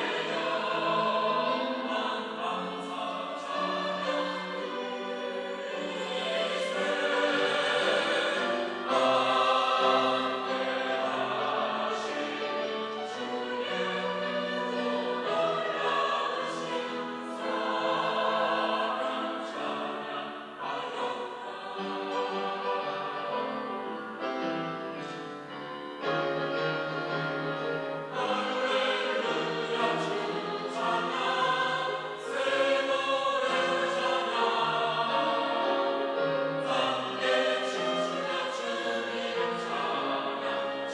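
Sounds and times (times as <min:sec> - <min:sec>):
choir singing: 0:00.0 - 0:40.9.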